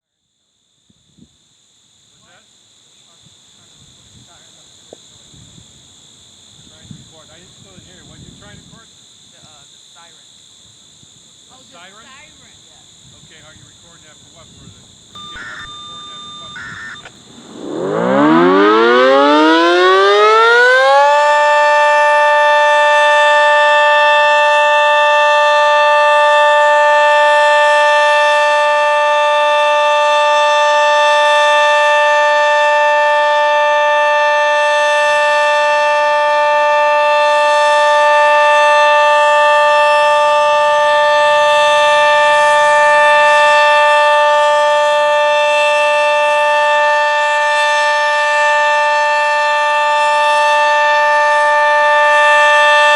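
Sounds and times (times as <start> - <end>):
two-tone warning siren: 15.2 - 52.9.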